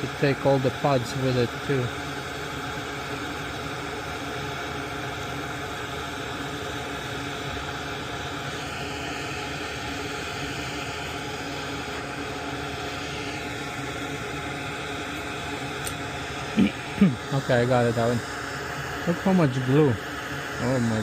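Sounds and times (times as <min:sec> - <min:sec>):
hot-air gun blowing: 0:00.0 - 0:21.0.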